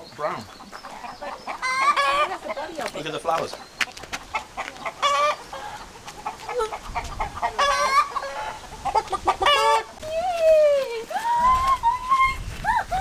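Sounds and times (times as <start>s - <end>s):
chickens clucking: 0.0s - 10.2s
drawn-out chicken calls: 0.0s - 13.0s.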